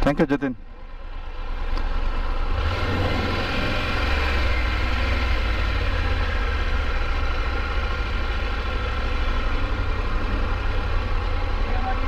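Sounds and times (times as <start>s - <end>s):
motorcycle engine idling: 3.8s - 12.0s.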